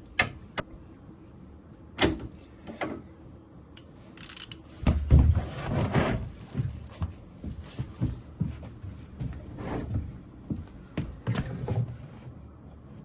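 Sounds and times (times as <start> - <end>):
handling and rubbing noise: 4.8 - 13.0.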